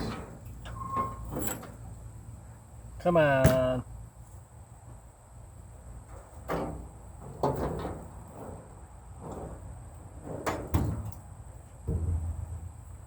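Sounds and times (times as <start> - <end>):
sharp knocks and clatters: 6.4 - 13.0
low steady hum: 10.8 - 13.0.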